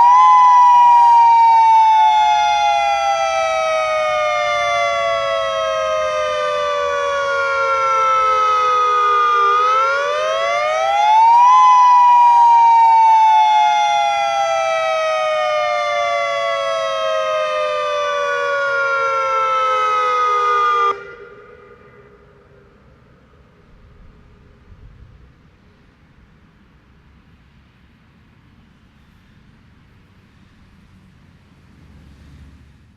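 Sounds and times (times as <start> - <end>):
warning siren wailing: 0.0 - 23.6.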